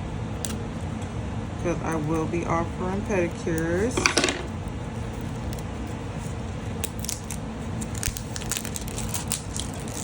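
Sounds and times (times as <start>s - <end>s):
packaging crackling: 7.0s - 10.0s.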